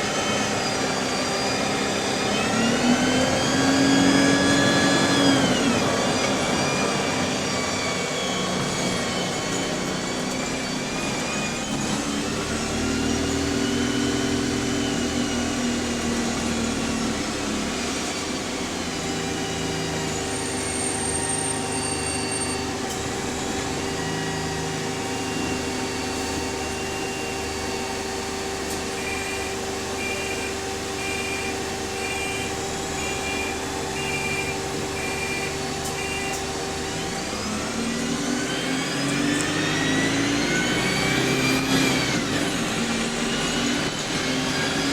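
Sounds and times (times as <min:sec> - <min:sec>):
bus engine and gearbox whine: 0:00.0 - 0:44.9
high warning tone beeping: 0:29.0 - 0:37.1.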